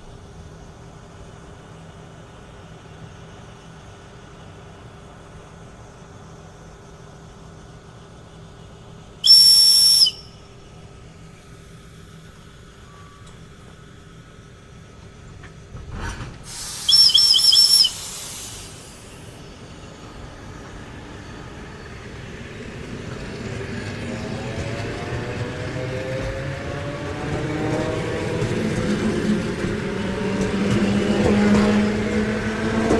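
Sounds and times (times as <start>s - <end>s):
train rumble and whine: 0.0s - 32.9s
train air whistle: 9.2s - 10.4s, 16.5s - 19.4s.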